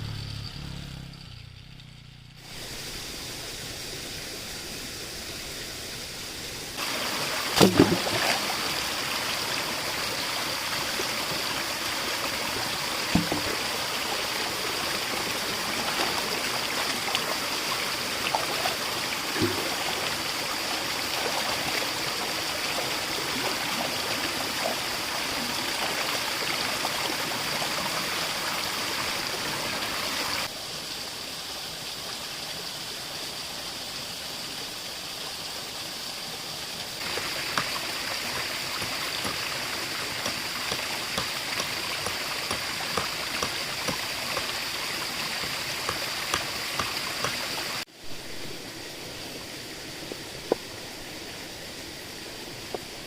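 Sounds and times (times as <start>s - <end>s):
stream water flowing: 2.5s - 53.0s
sharp knocks or splashes: 6.8s - 8.7s, 13.1s - 13.8s, 37.0s - 44.6s, 45.4s - 47.5s.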